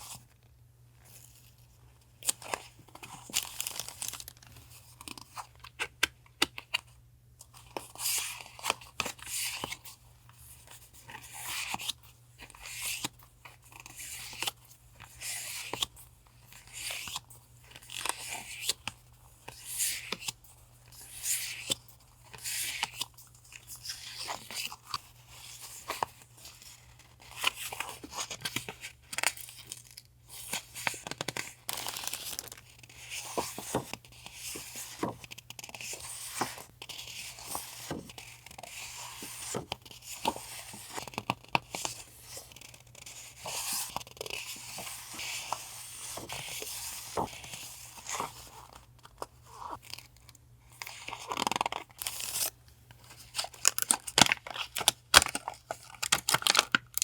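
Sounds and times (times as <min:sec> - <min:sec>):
packaging rustling and tearing: 0:03.0 - 0:04.5, 0:30.9 - 0:32.7, 0:53.1 - 0:57.0.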